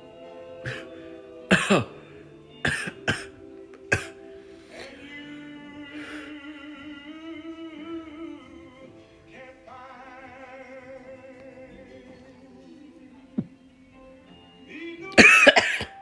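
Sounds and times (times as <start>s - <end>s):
background music: 0.0s - 16.0s
person singing long notes: 0.6s - 8.6s.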